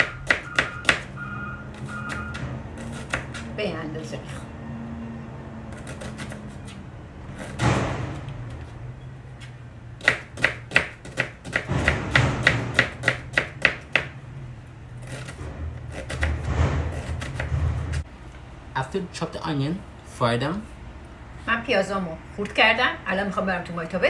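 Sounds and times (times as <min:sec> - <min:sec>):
knife chopping onion: 0:00.0 - 0:01.2, 0:01.8 - 0:03.6, 0:05.7 - 0:08.7, 0:09.4 - 0:14.2, 0:15.0 - 0:18.0.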